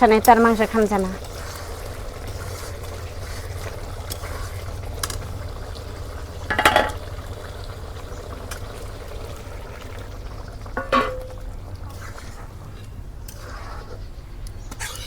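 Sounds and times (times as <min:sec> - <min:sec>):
water pouring into pot: 0:00.0 - 0:13.7
liquid bubbling: 0:00.0 - 0:14.4
utensil clanking against pot: 0:06.4 - 0:07.2, 0:10.7 - 0:11.6.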